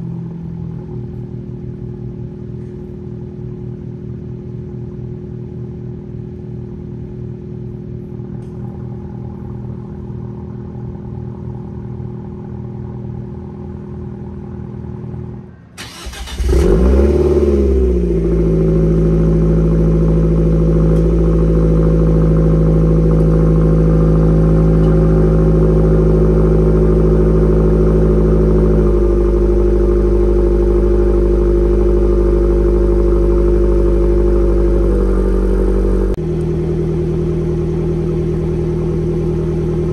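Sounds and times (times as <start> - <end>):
distant car engine idling: 0.0 - 39.9
close car engine revving and idling: 15.8 - 39.9.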